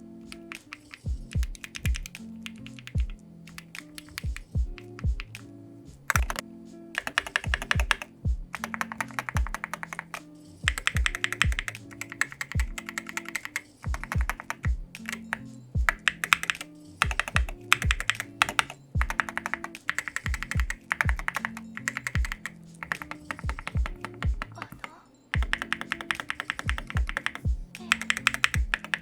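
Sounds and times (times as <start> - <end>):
background music with kick drum: 0.0 - 24.8, 25.4 - 29.0
mechanical keyboard key clacks: 0.3 - 5.4, 6.1 - 6.4, 7.0 - 15.2, 25.4 - 27.4.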